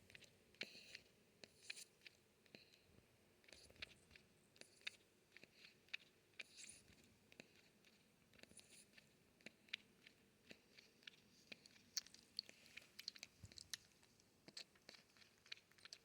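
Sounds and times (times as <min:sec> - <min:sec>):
porcupine mouth clicks: 0:03.4 - 0:16.0.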